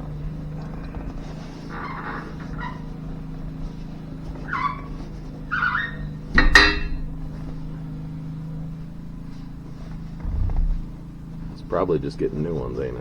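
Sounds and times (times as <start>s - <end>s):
steady low hum: 2.5s - 13.0s
loud metallic clank: 6.3s - 7.8s.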